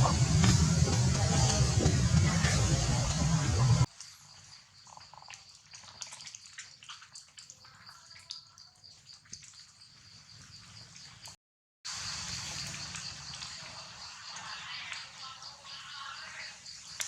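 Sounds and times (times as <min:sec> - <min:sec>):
steady high-pitched drone: 0:00.0 - 0:03.9.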